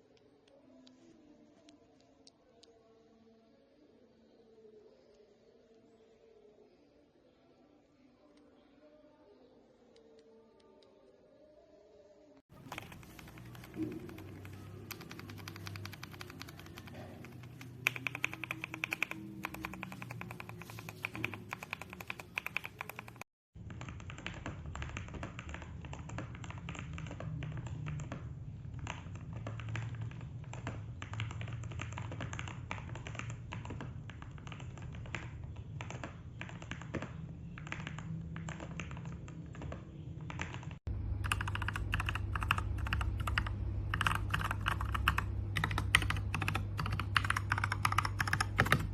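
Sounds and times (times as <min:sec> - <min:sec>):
typing on mechanical keyboard: 0:12.6 - 0:48.9.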